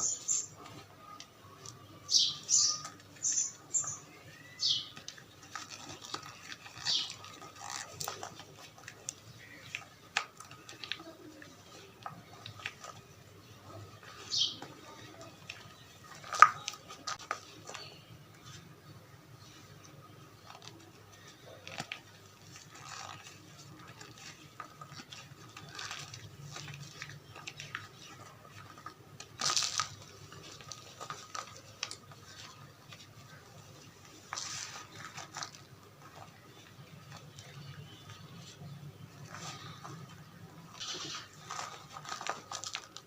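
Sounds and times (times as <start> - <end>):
chalk crushing squeaks and crunches: 0.0 - 43.0.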